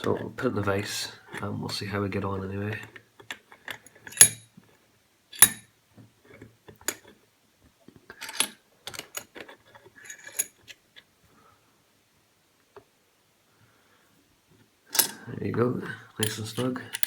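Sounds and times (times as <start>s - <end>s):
metal lock clicking in vise: 4.1s - 4.4s, 5.4s - 5.6s.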